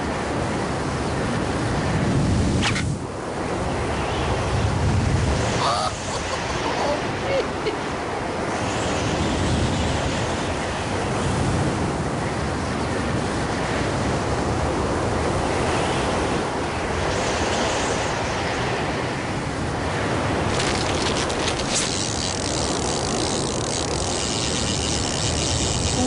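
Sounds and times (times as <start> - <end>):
strong gusting wind: 0.0 - 26.0
rapid rattling: 20.5 - 26.0.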